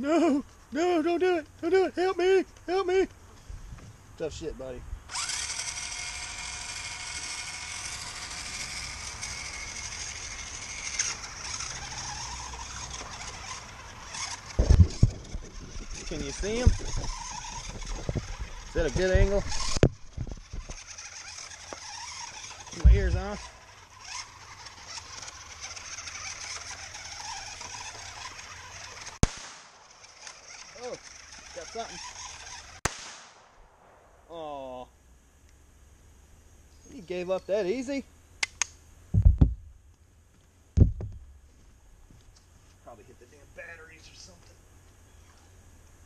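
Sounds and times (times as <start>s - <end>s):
toy electric motor whining: 5.1s - 29.2s, 29.8s - 32.8s.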